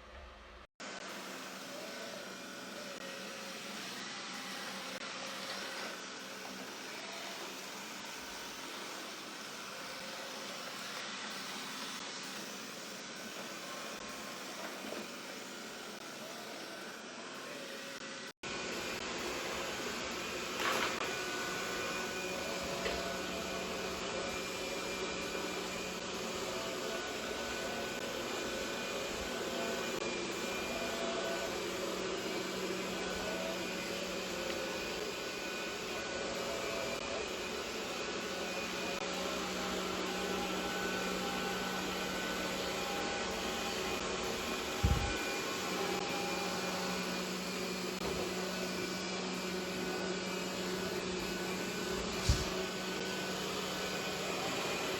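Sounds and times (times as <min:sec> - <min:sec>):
robot vacuum motor whirring: 0:18.6 - 0:54.9.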